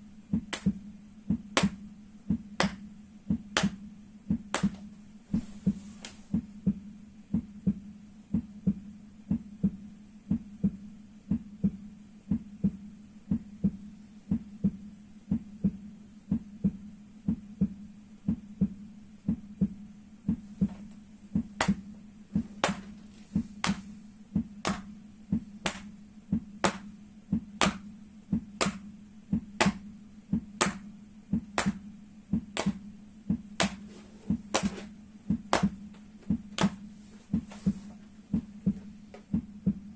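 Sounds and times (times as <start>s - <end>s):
knocks on soles of feet: 29.4s - 39.8s.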